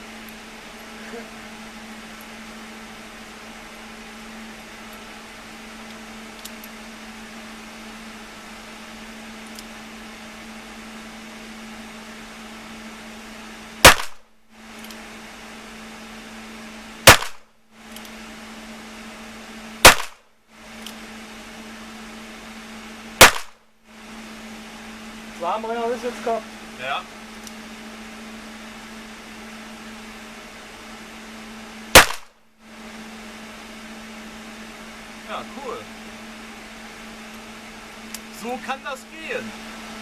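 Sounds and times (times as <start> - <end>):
steady faint hum: 0.0 - 40.0
handgun shots: 13.8 - 14.2, 17.1 - 17.5, 19.8 - 20.2, 23.2 - 23.6, 32.0 - 32.4.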